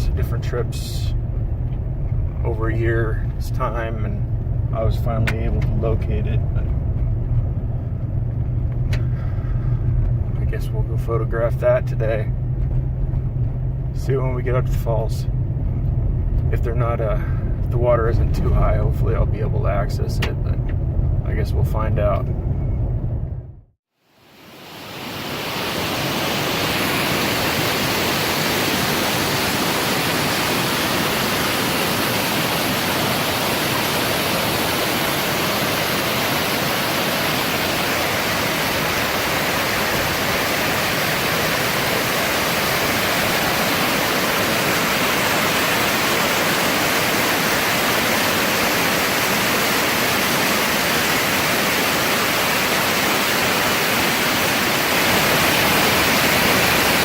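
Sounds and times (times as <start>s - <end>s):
waterfall rushing: 24.2s - 57.0s.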